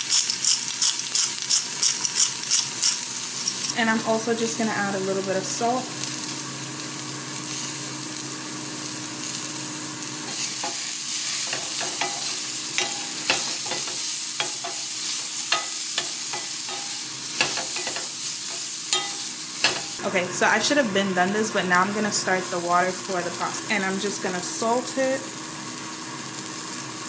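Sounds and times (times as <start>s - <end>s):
vegetables sizzling in a frying pan: 0.0s - 27.0s
utensil scraping a pan: 10.3s - 20.0s.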